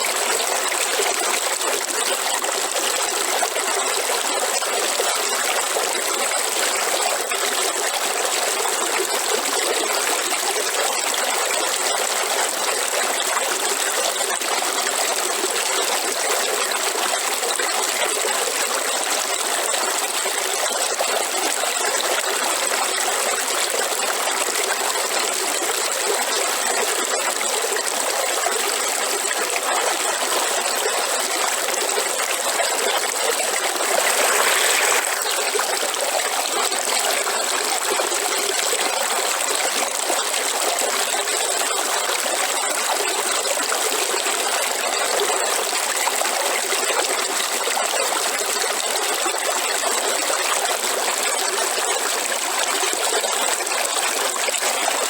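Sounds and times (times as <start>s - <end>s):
river water flowing: 25.6s - 48.8s.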